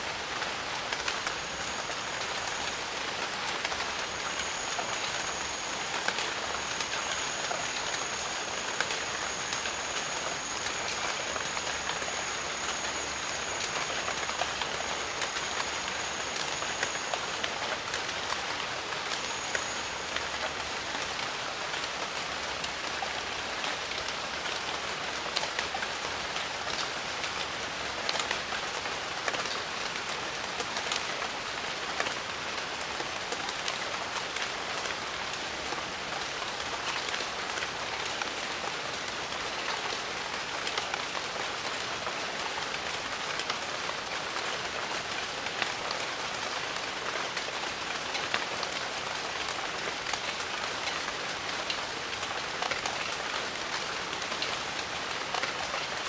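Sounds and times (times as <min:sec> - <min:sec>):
thin high steady tone: 0:00.0 - 0:22.0, 0:50.8 - 0:56.0
rain hiss with ticking drops: 0:00.0 - 0:56.0.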